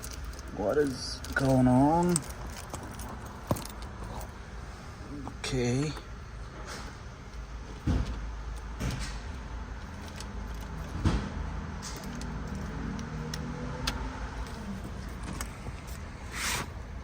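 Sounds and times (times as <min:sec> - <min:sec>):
keys jingling: 0:00.0 - 0:04.4, 0:08.5 - 0:16.1
key clicking in ignition lock: 0:11.7 - 0:16.0.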